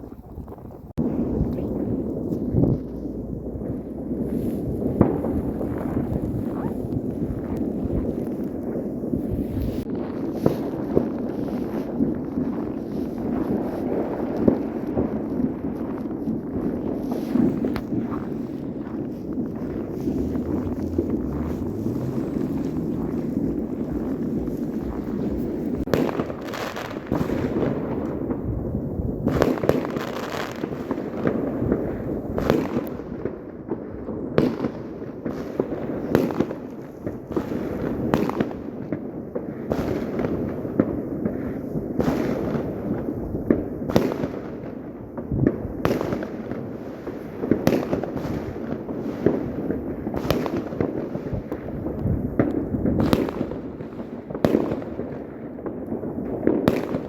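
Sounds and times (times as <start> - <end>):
distant fireworks rumble: 0.0 - 57.0
fireworks bangs and cracks: 1.0 - 57.0.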